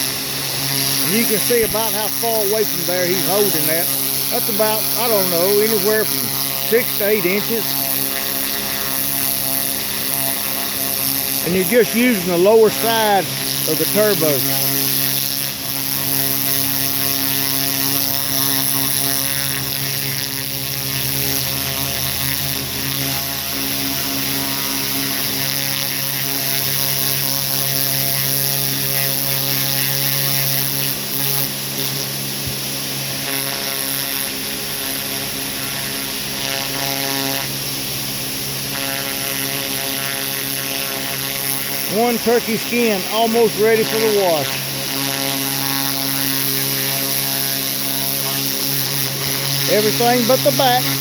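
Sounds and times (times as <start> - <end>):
pressure washer motor drone: 0.0 - 51.0
water spray hissing: 0.2 - 7.8.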